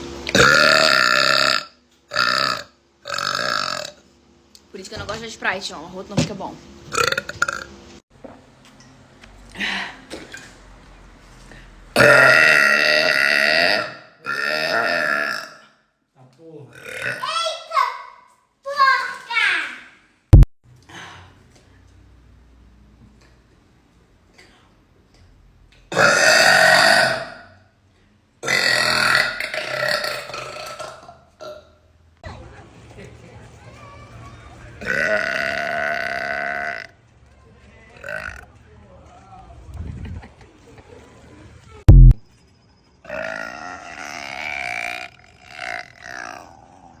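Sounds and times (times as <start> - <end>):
person burping loudly: 0.3 - 4.0, 6.9 - 7.7, 12.0 - 15.7, 16.7 - 17.3, 25.9 - 27.5, 28.4 - 31.7, 34.8 - 37.0, 38.0 - 38.4, 43.1 - 47.0.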